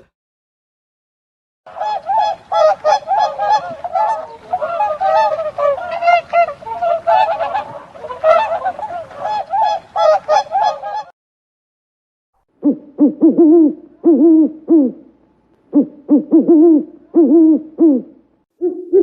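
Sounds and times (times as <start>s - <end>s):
goose-like honking: 1.7s - 11.1s.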